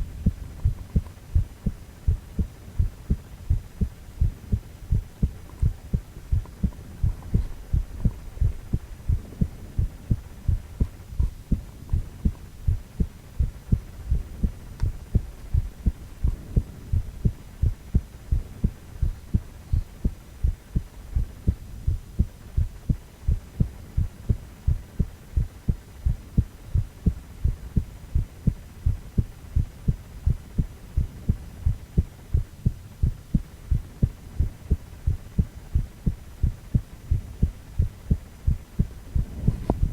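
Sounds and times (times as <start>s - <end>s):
heartbeat thumps: 0.0s - 39.9s
low hum: 0.0s - 39.9s.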